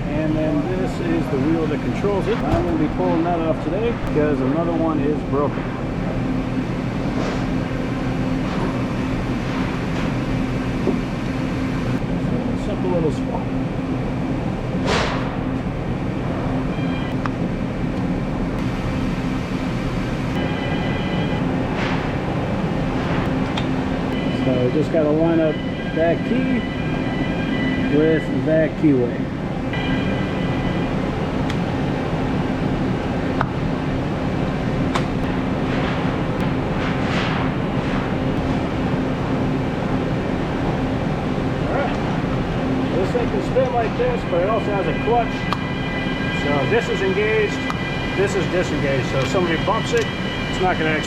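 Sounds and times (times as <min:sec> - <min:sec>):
printing press rumbling: 0:00.0 - 0:51.0.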